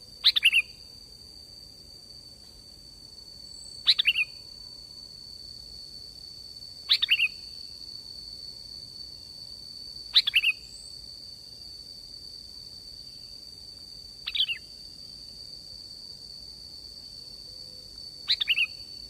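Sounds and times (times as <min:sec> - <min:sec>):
bird calling: 0:00.2 - 0:00.7, 0:03.9 - 0:04.3, 0:06.9 - 0:07.3, 0:10.1 - 0:10.6, 0:14.3 - 0:14.6, 0:18.3 - 0:18.8.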